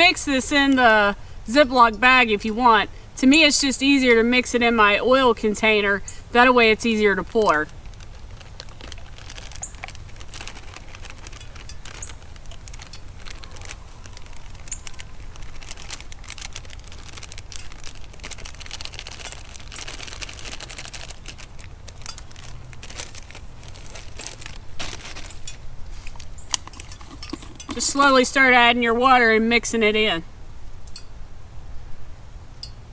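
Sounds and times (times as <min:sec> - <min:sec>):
low steady rumble: 0:00.0 - 0:32.9
plastic bag crinkling: 0:06.6 - 0:28.3.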